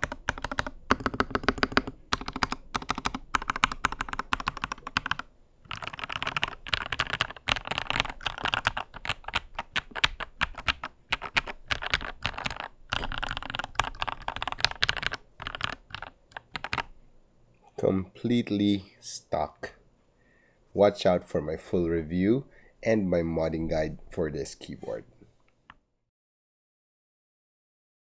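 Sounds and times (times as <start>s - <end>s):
mechanical keyboard typing: 0.0s - 16.9s.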